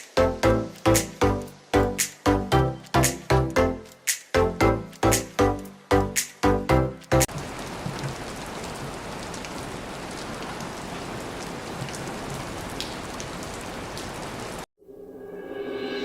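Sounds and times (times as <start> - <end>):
steady rain falling: 0.0 - 4.1, 4.7 - 14.7
music: 0.0 - 7.3.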